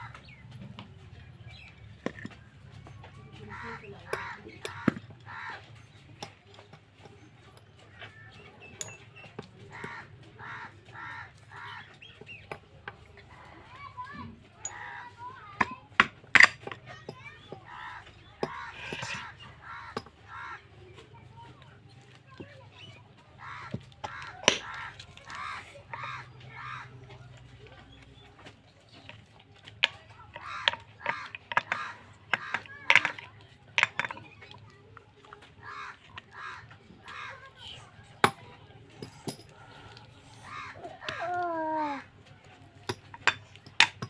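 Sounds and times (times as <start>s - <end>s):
crow cawing: 3.5s - 5.6s, 9.7s - 11.9s, 17.7s - 20.6s, 23.4s - 26.9s, 30.4s - 32.6s, 35.6s - 37.5s, 39.8s - 42.0s.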